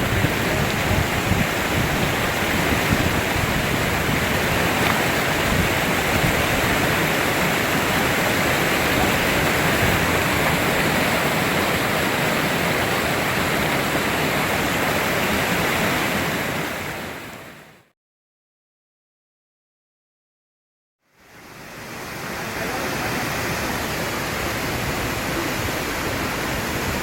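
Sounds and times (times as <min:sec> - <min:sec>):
waterfall pouring: 0:00.0 - 0:17.2.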